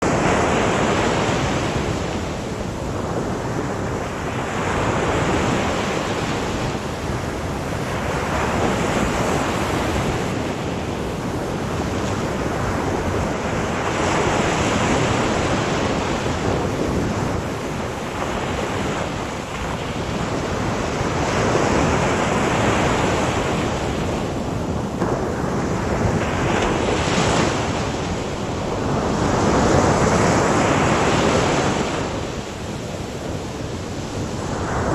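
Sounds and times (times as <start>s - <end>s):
sea waves breaking on shore: 0.0s - 34.9s
wind: 0.0s - 34.9s.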